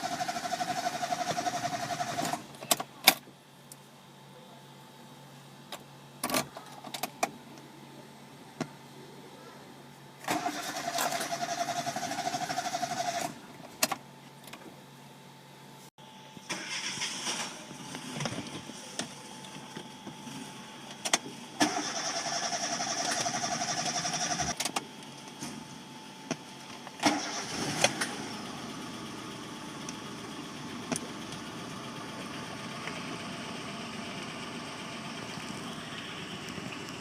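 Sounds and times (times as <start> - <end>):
engine cranking by starter: 0.0 - 2.5, 10.2 - 13.4, 16.4 - 17.7, 21.6 - 24.6, 27.0 - 33.3.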